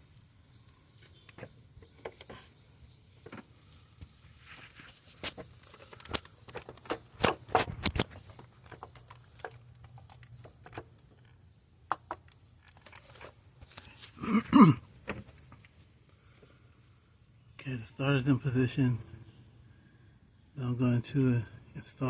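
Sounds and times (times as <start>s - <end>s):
metal clicks and knocks: 5.2s - 13.3s.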